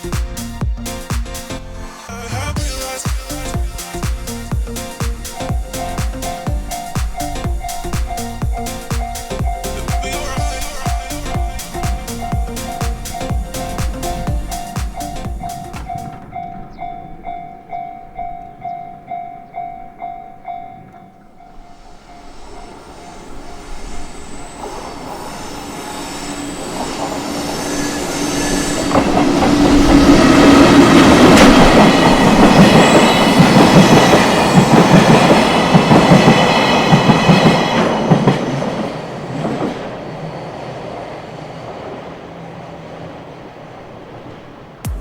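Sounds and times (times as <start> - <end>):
train rumbling: 0.0 - 45.0
wheels clacking over rail joints: 5.2 - 21.5
high wheel squeal: 21.6 - 35.3.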